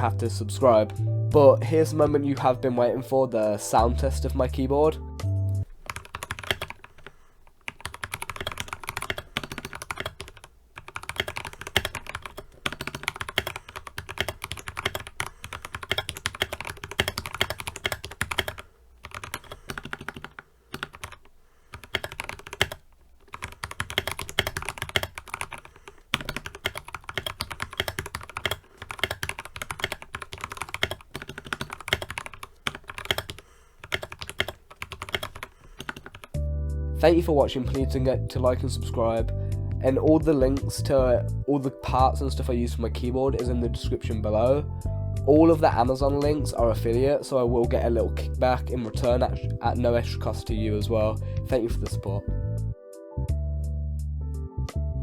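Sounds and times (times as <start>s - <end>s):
mechanical keyboard typing: 5.7s - 36.4s.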